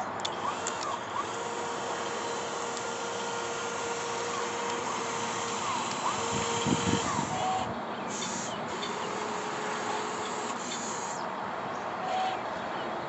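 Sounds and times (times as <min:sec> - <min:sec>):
toy excavator whining: 0:00.0 - 0:11.3
hiss: 0:08.1 - 0:09.4.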